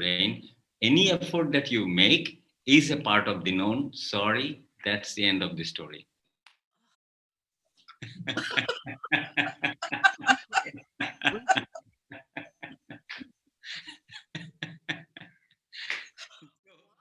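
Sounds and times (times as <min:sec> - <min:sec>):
person laughing: 0:08.0 - 0:16.4.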